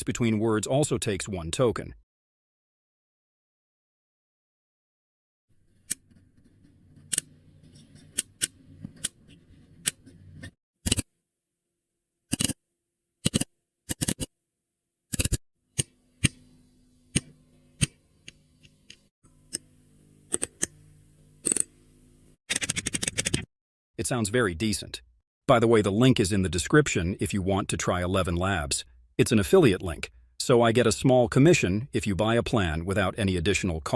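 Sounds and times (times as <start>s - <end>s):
sharp clicks: 17.1s - 19.7s.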